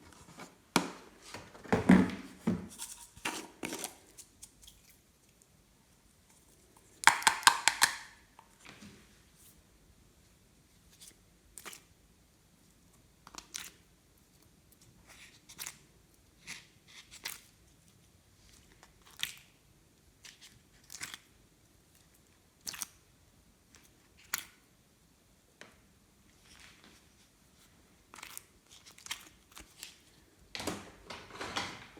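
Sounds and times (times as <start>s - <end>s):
slime clicking and popping: 7.1s - 8.1s.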